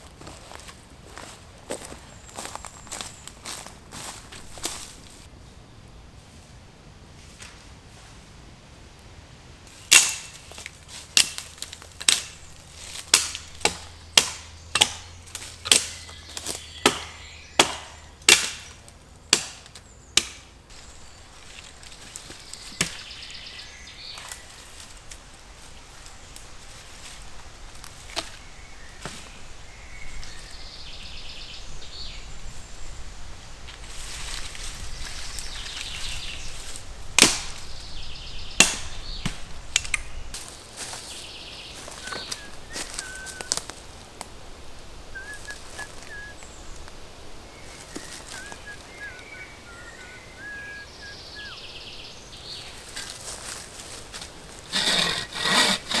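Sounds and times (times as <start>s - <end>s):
axe chopping wood: 9.9s - 20.5s, 22.7s - 23.2s, 37.2s - 37.6s, 38.6s - 40.1s, 54.7s - 56.0s
rustling: 52.4s - 56.0s.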